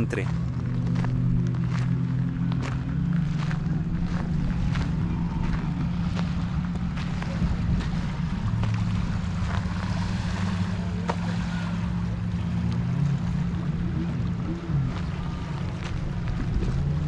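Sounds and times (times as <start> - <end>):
wind on microphone: 0.0 - 11.7, 13.2 - 17.0
low mechanical hum: 0.0 - 17.0.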